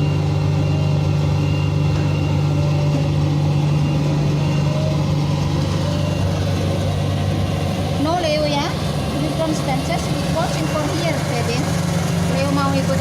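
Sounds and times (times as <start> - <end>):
combine harvester droning: 0.0 - 13.0.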